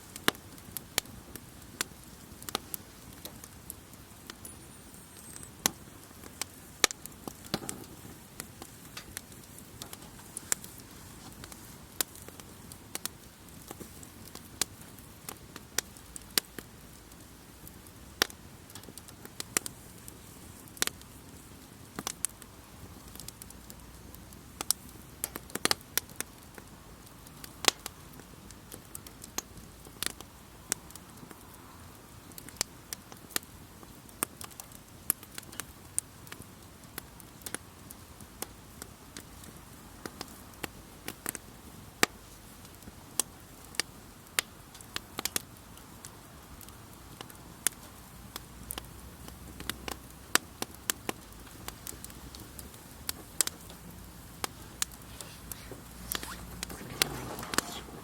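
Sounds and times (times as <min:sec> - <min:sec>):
hiss of burning: 0:00.0 - 0:16.8, 0:47.2 - 0:58.0
campfire crackling and popping: 0:00.0 - 0:58.0.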